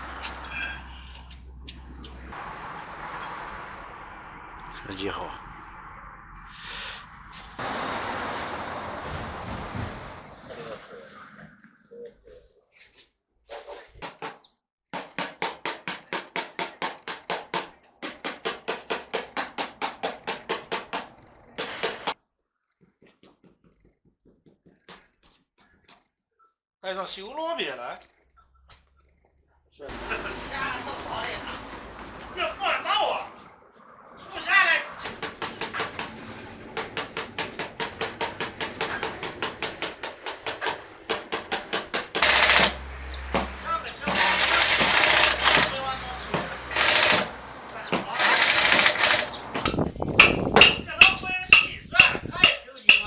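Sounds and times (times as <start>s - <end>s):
rapid hammer blows: 35.0s - 42.8s, 43.4s - 45.8s, 46.4s - 47.4s, 48.0s - 53.0s
fast sharp knocks: 48.2s - 53.0s.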